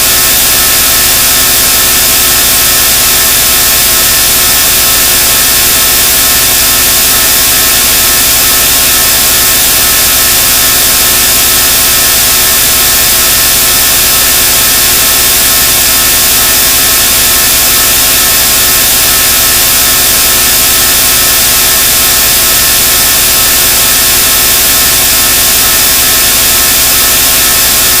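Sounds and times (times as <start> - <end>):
loud machine hiss with low flutter: 0.0 - 28.0.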